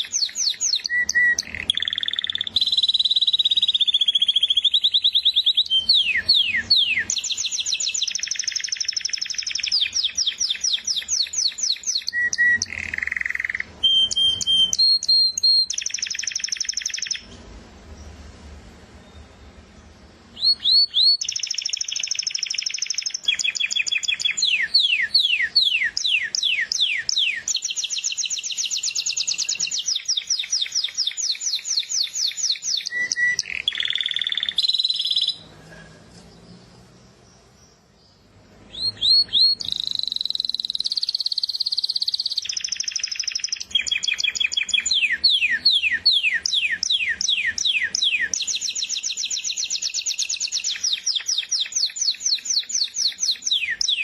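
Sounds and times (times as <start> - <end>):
songbird singing trills: 0.0 - 18.2, 19.0 - 54.0.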